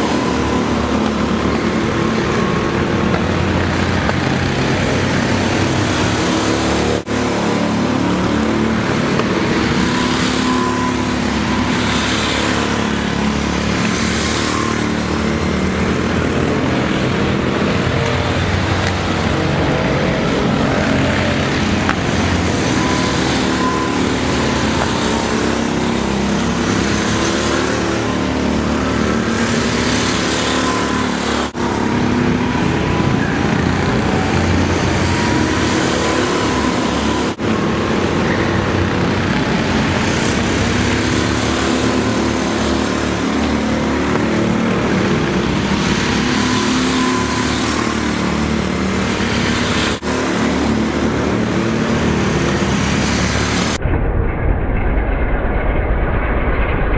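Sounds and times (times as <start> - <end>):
go-kart engines running: 0.0 - 53.8.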